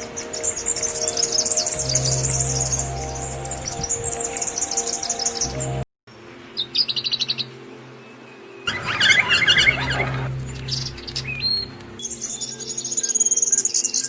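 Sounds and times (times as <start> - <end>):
steady low hum: 0.0 - 4.6, 9.7 - 12.4
bird trill: 6.6 - 14.0.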